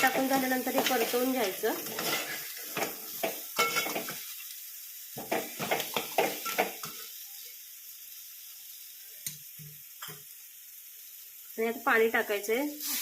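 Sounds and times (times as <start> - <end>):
utensil scraping a pan: 0.0 - 4.2
food sizzling in oil: 0.0 - 13.0.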